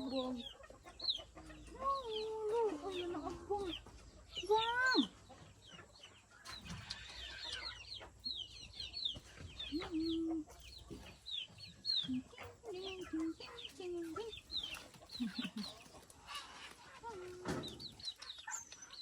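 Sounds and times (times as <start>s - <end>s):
chicks peeping: 0.0s - 19.0s
hen clucking: 0.0s - 19.0s.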